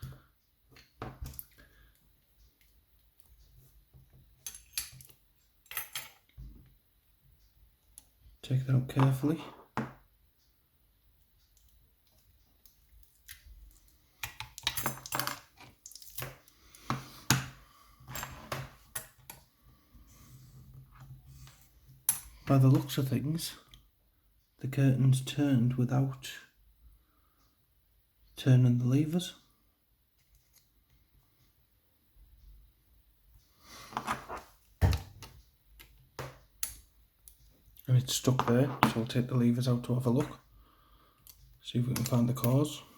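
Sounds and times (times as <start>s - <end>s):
metal lock parts clinking: 13.0s - 16.3s.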